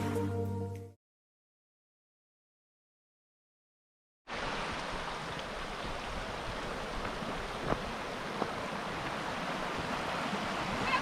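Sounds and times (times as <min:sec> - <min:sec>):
running water rushing: 0:04.3 - 0:11.0.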